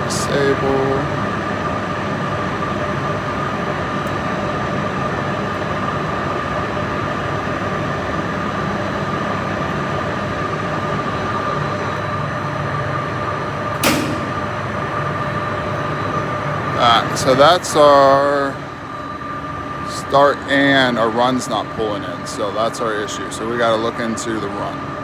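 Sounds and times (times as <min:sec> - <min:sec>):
machinery drone with whine: 0:07.8 - 0:25.0
contactor clacking: 0:13.2 - 0:17.4.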